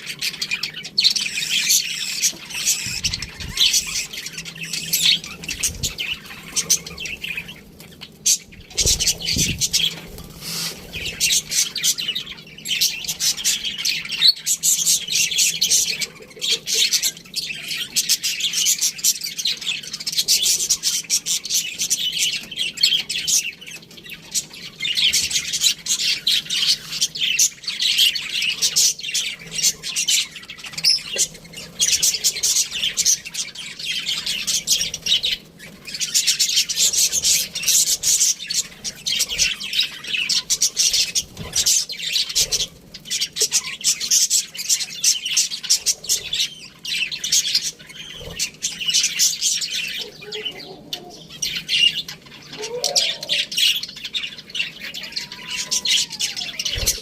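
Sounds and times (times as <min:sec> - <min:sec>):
budgerigars chattering and chirping: 0:00.0 - 0:57.0.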